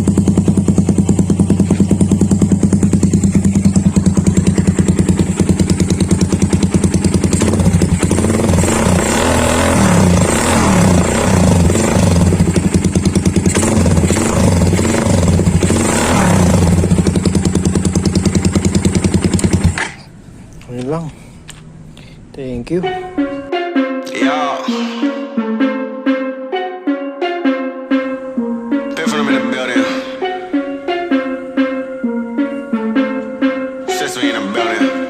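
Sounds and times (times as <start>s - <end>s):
motorcycle engine idling and revving: 0.0s - 20.1s.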